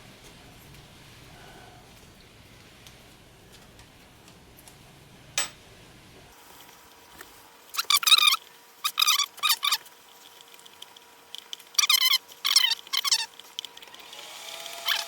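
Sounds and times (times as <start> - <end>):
screws squeaking when turned: 11.8 - 13.4.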